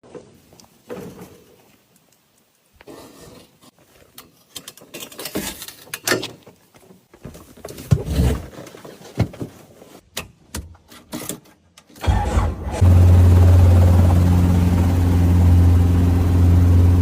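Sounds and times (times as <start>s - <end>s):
low motor hum: 12.7s - 17.0s.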